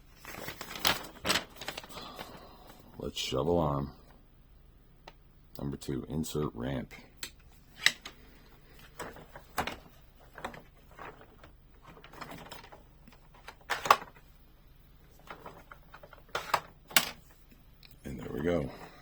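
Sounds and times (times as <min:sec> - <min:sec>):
light handling noise: 0:08.8 - 0:14.3.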